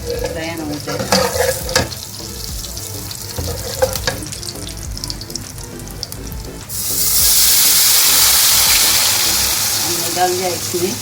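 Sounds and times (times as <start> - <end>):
hot oil sizzling: 0.0 - 11.0
utensil clicking in pan: 3.4 - 4.3.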